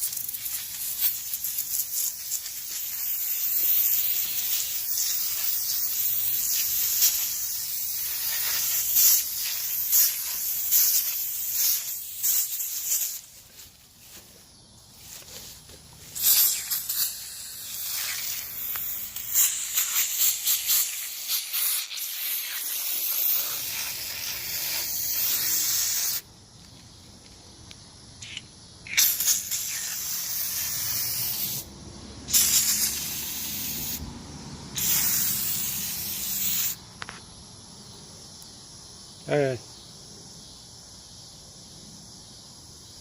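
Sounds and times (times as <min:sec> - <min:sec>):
aerosol can spraying: 0:00.0 - 0:14.2, 0:15.0 - 0:26.2, 0:28.2 - 0:31.7, 0:32.3 - 0:34.0, 0:34.7 - 0:36.8.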